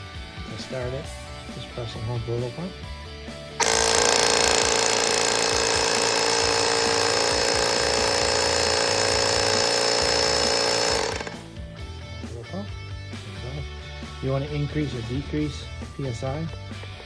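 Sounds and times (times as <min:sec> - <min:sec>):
electric air compressor running: 0:03.6 - 0:11.6.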